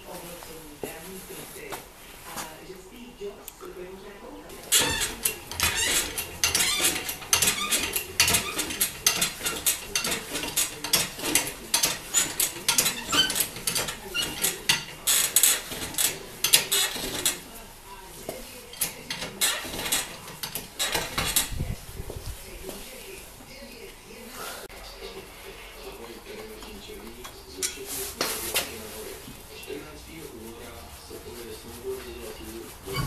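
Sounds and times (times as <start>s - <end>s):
metal tools clattering: 4.5s - 17.6s, 18.5s - 21.6s, 26.3s - 28.8s, 32.8s - 33.0s.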